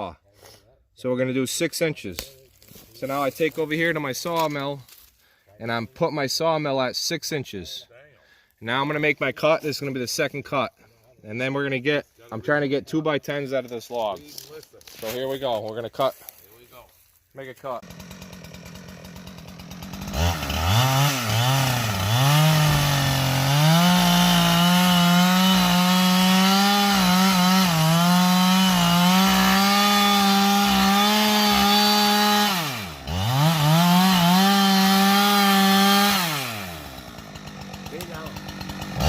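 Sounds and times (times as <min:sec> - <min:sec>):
chainsaw cutting log: 0:17.4 - 0:39.0.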